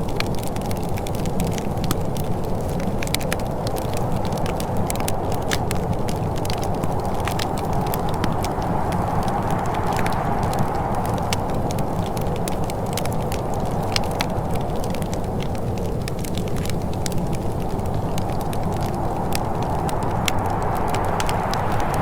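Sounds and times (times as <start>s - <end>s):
wood fire crackling: 0.0s - 22.0s
low rumble: 17.1s - 22.0s.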